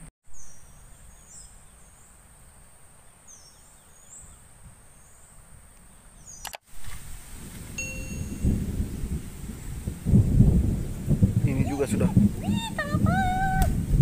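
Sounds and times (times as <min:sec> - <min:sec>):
bird chirping: 0:00.3 - 0:06.6.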